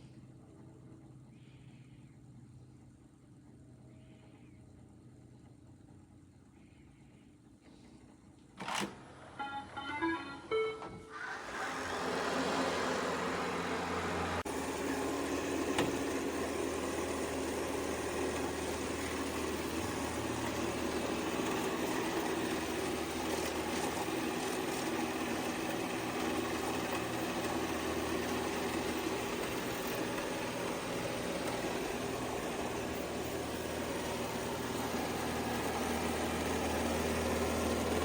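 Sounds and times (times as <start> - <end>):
robot vacuum motor humming: 11.2 - 38.0.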